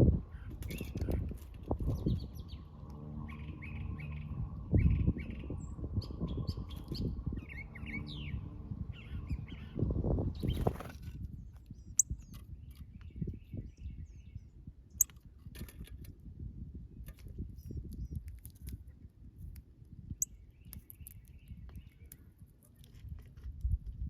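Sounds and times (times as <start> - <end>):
low rumble: 0.0 - 11.0
small birds chirping: 0.3 - 15.1, 17.4 - 22.9
steady hum: 1.7 - 10.4.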